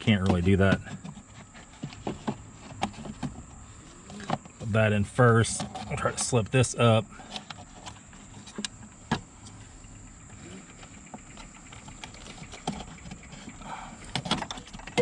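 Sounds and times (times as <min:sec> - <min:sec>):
plastic and rubber parts knocking: 0:00.0 - 0:04.7, 0:10.9 - 0:15.0.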